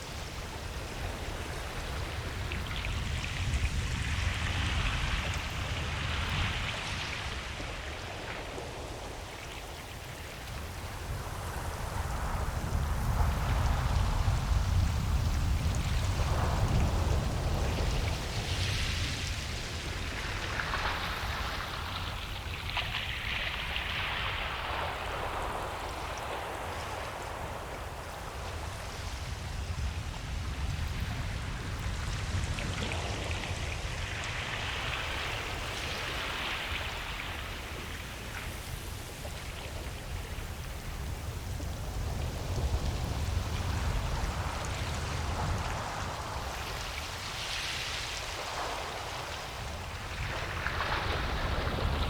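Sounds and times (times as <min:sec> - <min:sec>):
ocean waves breaking on beach: 0:00.0 - 0:52.0.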